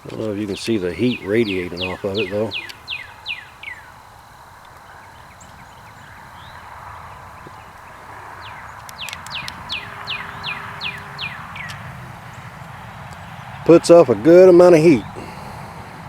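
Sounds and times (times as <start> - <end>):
sharp clicks: 0.0 - 13.6
background hiss: 0.0 - 16.0
bird whistled calls: 0.6 - 12.6.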